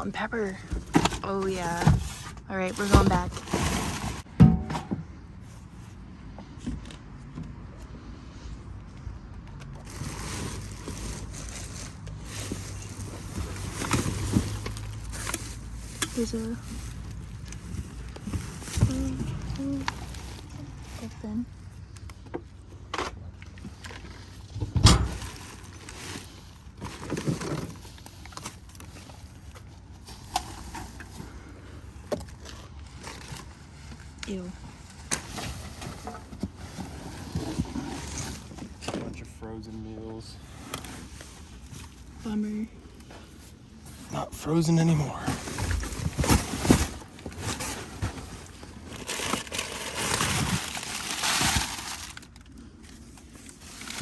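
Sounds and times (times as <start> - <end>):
trash rustling: 0.0 - 6.0, 9.7 - 39.3, 40.4 - 54.0
thump in dumpster: 4.3 - 5.1, 24.6 - 25.3.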